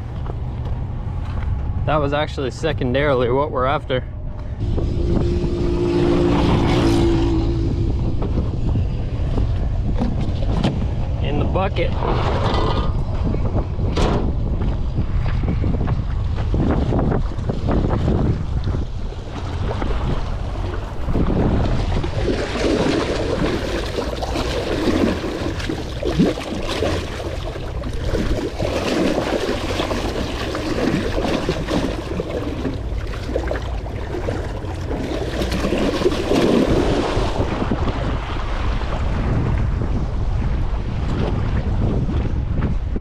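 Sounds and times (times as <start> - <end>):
wind gusting on microphone: 0.0 - 43.0
waves washing against shore: 16.5 - 42.4.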